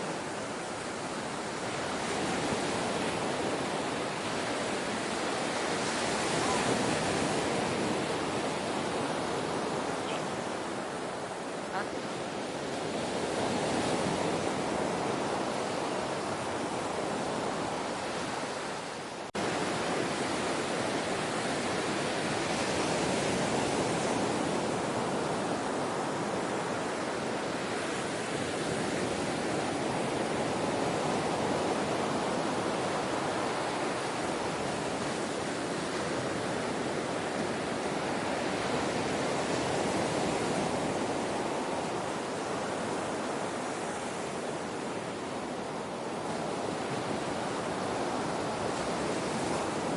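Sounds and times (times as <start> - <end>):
ocean waves washing on shore: 0.0 - 49.9.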